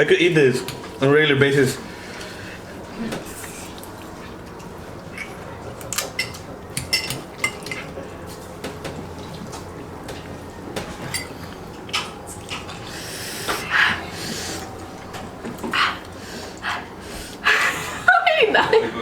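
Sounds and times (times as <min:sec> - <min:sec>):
utensils clinking against bowls: 0:03.0 - 0:12.9.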